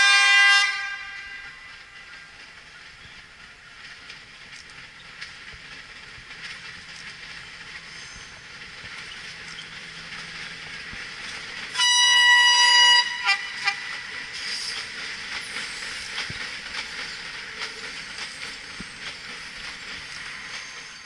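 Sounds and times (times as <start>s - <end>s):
train horn: 0.0s - 2.3s, 11.7s - 14.0s
train running: 0.0s - 21.0s.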